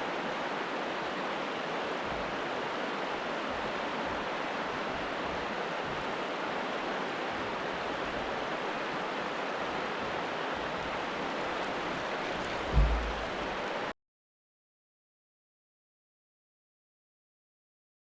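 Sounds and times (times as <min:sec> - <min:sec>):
river water rushing: 0:00.0 - 0:13.9
low thump: 0:12.6 - 0:13.5.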